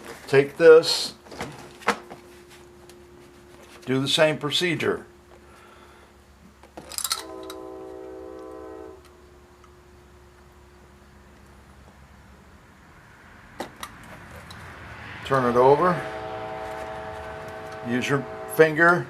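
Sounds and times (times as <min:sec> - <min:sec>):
faint steady hum: 0:00.0 - 0:19.0
horn chord: 0:02.2 - 0:06.1, 0:07.0 - 0:10.3, 0:15.0 - 0:19.0.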